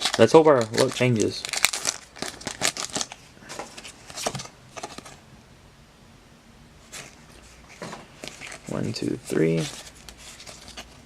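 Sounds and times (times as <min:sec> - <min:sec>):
foil wrapper rustling: 0:00.0 - 0:03.2, 0:07.0 - 0:11.0.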